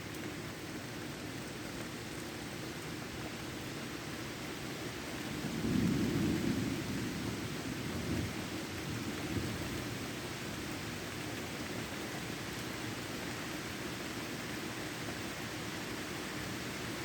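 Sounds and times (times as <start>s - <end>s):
heavy rain falling: 0.0s - 17.0s
thunder rumbling: 5.4s - 10.0s.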